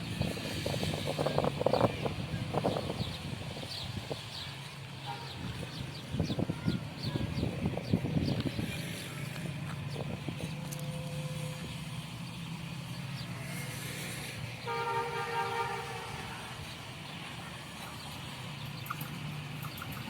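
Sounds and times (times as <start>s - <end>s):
train horn chord: 14.6s - 16.4s.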